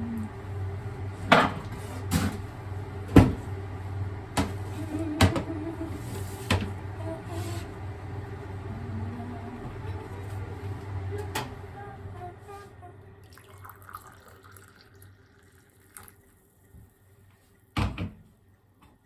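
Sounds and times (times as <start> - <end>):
steady low hum: 0.0 - 14.0
dishes and cupboard knocking: 5.2 - 5.6.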